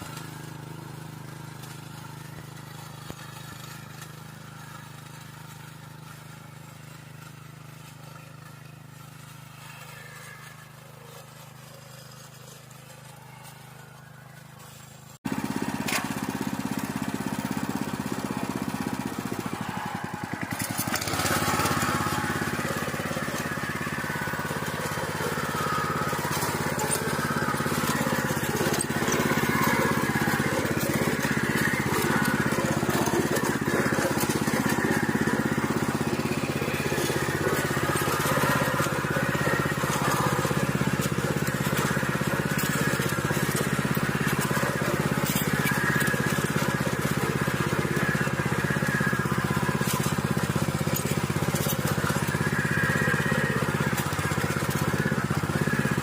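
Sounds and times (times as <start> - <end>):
motor plough engine running: 0.0 - 56.0
rough grinding in stony soil: 0.0 - 56.0.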